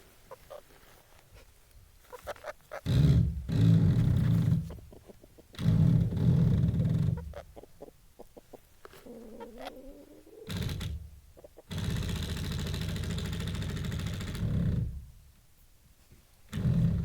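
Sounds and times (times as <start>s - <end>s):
chicken clucking: 0.2s - 3.0s, 4.0s - 10.6s, 11.3s - 11.7s.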